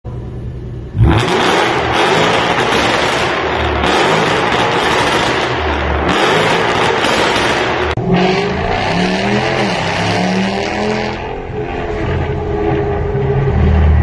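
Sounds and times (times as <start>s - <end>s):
car exhaust accelerating: 0.1s - 14.0s
exhaust pops and crackles: 1.2s - 8.0s.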